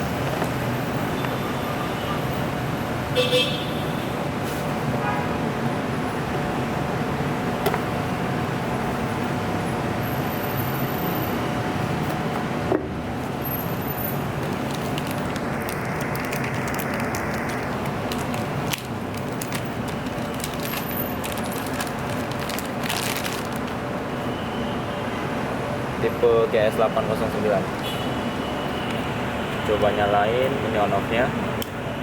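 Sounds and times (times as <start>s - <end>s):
packaging clicking and crinkling: 14.2s - 23.8s.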